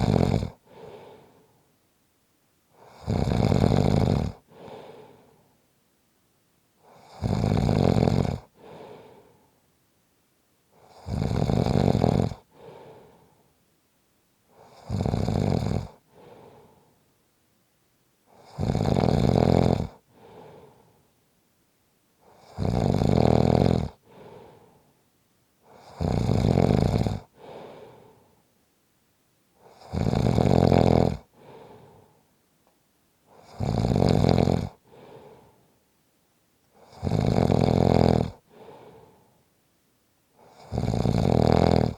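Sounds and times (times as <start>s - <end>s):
person snoring: 0.0s - 1.5s, 2.8s - 5.4s, 6.8s - 9.4s, 10.8s - 13.4s, 14.5s - 16.9s, 18.3s - 20.9s, 22.2s - 24.8s, 25.7s - 28.3s, 29.6s - 32.2s, 33.3s - 35.6s, 36.8s - 39.3s, 40.4s - 41.9s.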